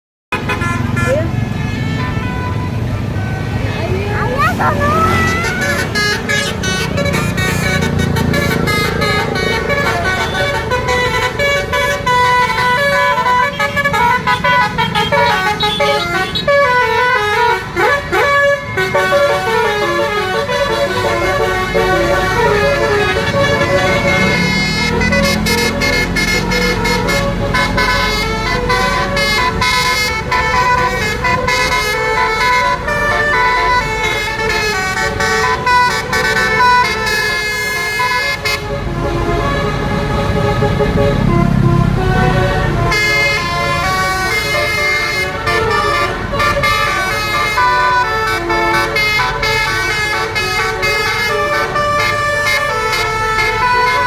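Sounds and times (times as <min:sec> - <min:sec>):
bus engine running: 0:00.3 - 0:54.0
musical bus horn playing tune: 0:00.3 - 0:54.0.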